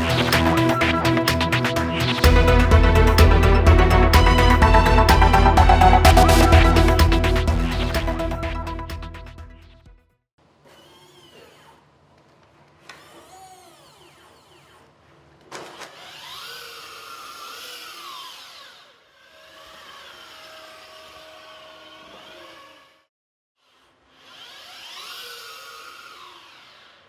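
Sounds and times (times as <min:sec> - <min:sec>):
robotic motor whirring whines: 0:24.2 - 0:27.0.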